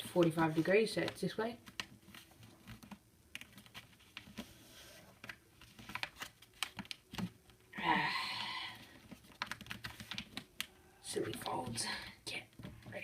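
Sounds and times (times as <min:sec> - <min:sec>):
paper being folded: 0:00.0 - 0:07.6.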